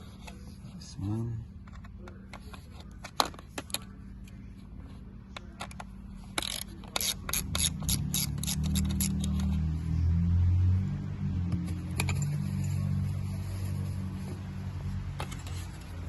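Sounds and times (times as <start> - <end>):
ratcheting driver clicking: 5.6 - 9.6.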